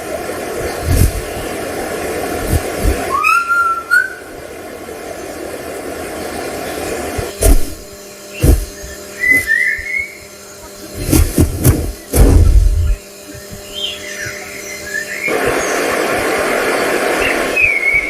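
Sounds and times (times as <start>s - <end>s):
bird whistling calls: 3.1s - 4.3s, 8.3s - 10.3s, 13.3s - 15.8s, 17.2s - 18.0s
loud thumps: 7.3s - 9.5s, 11.0s - 13.0s.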